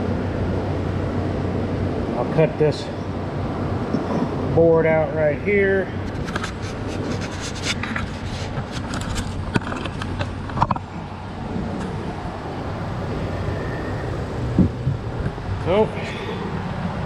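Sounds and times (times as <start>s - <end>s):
fan humming: 0.0s - 17.0s
light scrapes and clicks: 6.0s - 10.9s.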